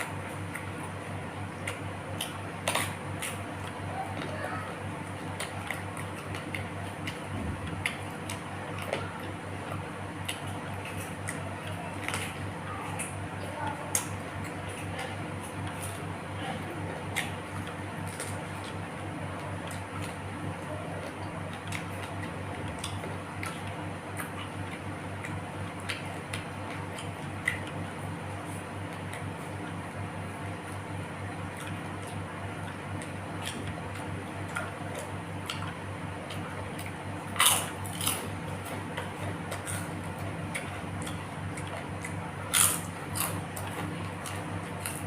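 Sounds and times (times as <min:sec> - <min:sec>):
person chewing with mouth open: 0:00.0 - 0:13.1, 0:19.6 - 0:45.0
steady low hum: 0:00.0 - 0:45.0.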